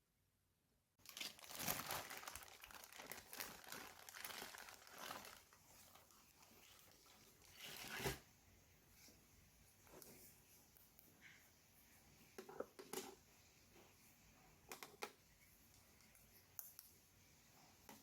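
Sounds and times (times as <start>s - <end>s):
plastic packaging crinkling: 1.0s - 8.1s.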